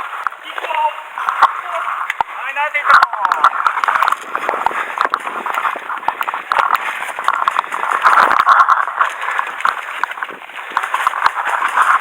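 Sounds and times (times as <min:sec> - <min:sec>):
running footsteps: 0:00.0 - 0:12.0
clothing and gear rustling: 0:03.3 - 0:12.0.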